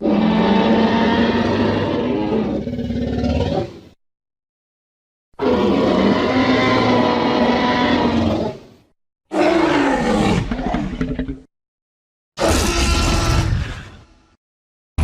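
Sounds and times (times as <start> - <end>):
dinosaur roaring: 0.0 - 3.8, 5.4 - 8.7, 9.3 - 11.5, 12.4 - 14.0.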